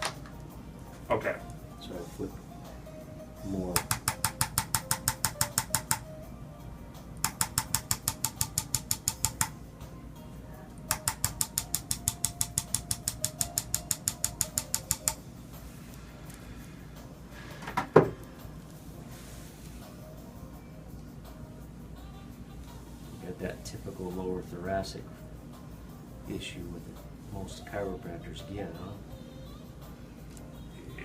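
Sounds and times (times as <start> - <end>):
electric adjusting instrument clicking: 10.9 - 15.2.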